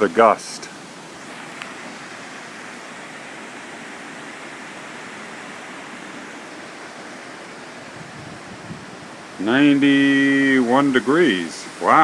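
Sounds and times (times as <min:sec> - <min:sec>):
rain falling in wind: 0:00.0 - 0:12.0.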